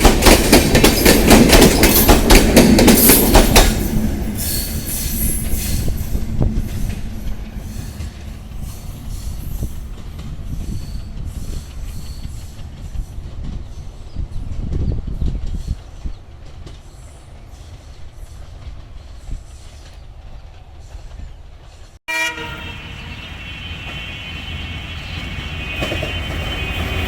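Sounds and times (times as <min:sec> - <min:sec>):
train wheels clattering: 0:00.0 - 0:22.0, 0:23.2 - 0:27.0
faint wheel squeal: 0:22.8 - 0:27.0.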